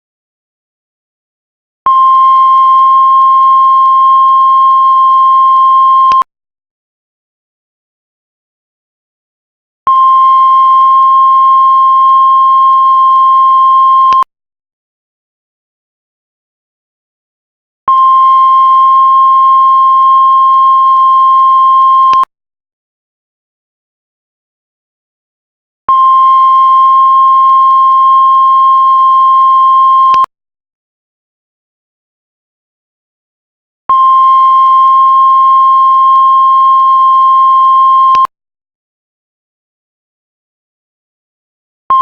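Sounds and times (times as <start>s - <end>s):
continuous high-pitched beep: 1.9s - 6.3s, 17.9s - 22.3s, 25.9s - 30.3s, 33.9s - 38.3s.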